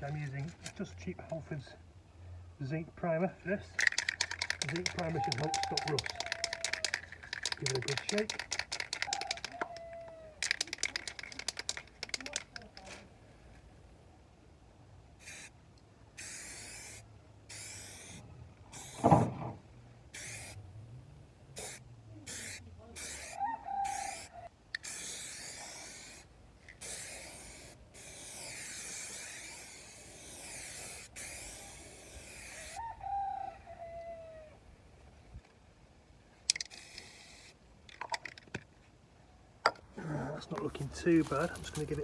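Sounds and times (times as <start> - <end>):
aerosol can spraying: 3.8 - 12.8, 15.2 - 15.5, 16.2 - 18.2, 18.8 - 19.2, 20.2 - 20.6, 21.6 - 32.8, 36.5 - 37.5
bird calling: 4.7 - 7.3, 8.6 - 10.4.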